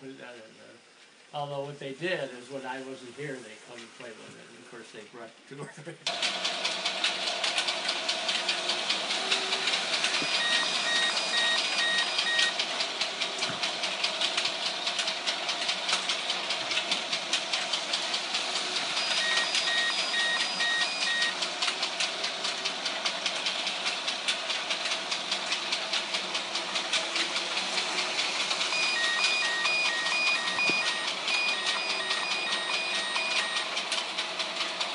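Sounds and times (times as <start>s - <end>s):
model train clicking on track: 6.1s - 34.9s
electronic beeping: 10.1s - 12.6s, 19.0s - 21.4s, 28.7s - 33.7s.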